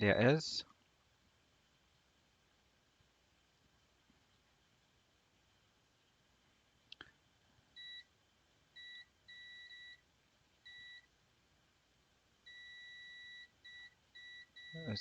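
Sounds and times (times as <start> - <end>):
multimeter beeps: 7.8 - 8.1, 8.8 - 10.0, 10.7 - 11.1, 12.5 - 15.0.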